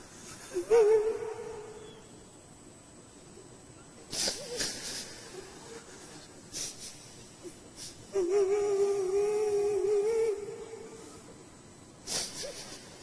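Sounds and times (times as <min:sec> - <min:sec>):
person reciting a long note: 0:00.0 - 0:02.1, 0:07.8 - 0:11.4
short breathy sounds: 0:12.0 - 0:13.0.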